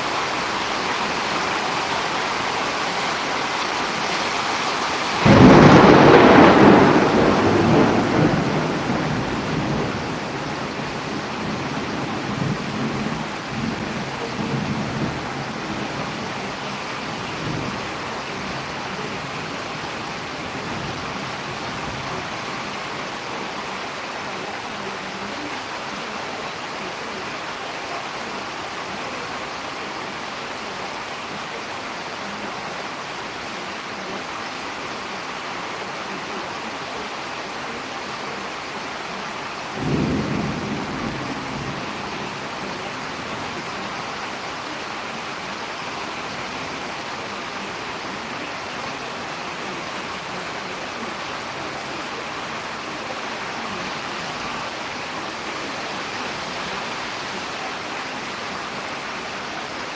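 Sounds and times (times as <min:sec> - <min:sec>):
steady rain: 0:00.0 - 0:59.9
thunderclap rumbling: 0:05.1 - 0:21.2, 0:39.8 - 0:43.7.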